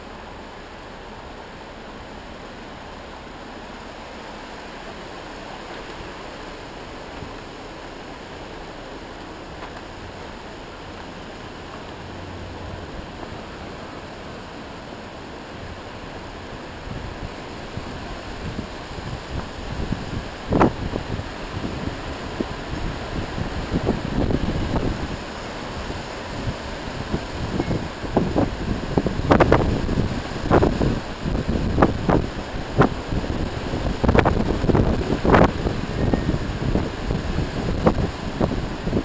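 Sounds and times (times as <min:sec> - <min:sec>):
storm wind rushing: 0:15.6 - 0:39.0
wind buffeting microphone: 0:15.6 - 0:39.0.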